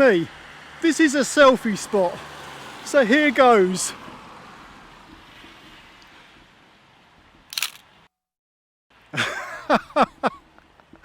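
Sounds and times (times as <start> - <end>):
camera shutter click: 7.5 - 7.9.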